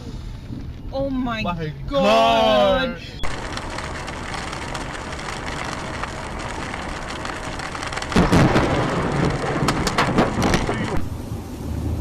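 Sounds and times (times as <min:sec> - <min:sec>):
crackling rumbling thunderclap: 0:03.2 - 0:12.0
steady rain: 0:03.2 - 0:12.0.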